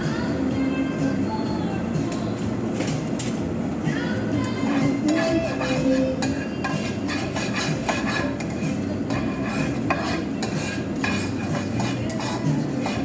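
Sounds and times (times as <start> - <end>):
dishes and cutlery clinking: 2.8 - 3.5, 4.6 - 13.0
dishes being scrubbed: 4.6 - 13.0.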